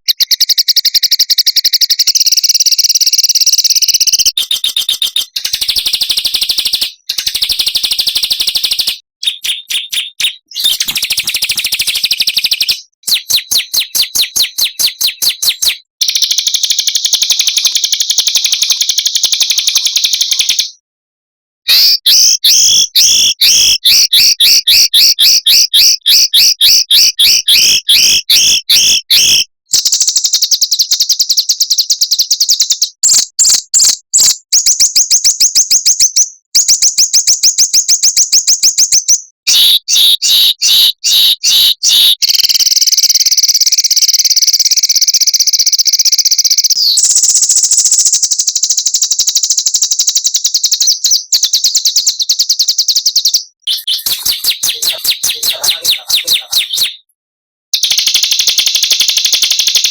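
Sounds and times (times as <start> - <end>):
songbirds trilling: 8.4 - 16.2, 53.7 - 57.1.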